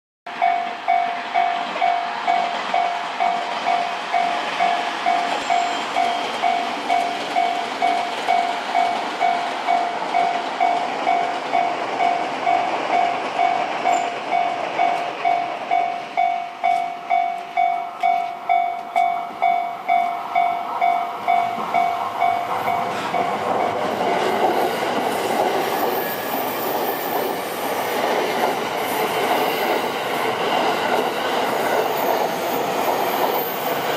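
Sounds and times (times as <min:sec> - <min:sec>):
passing train running noise: 0:00.3 - 0:33.9
train wheel clatter: 0:00.3 - 0:33.9
level crossing bell ringing: 0:00.4 - 0:12.2, 0:13.0 - 0:23.8.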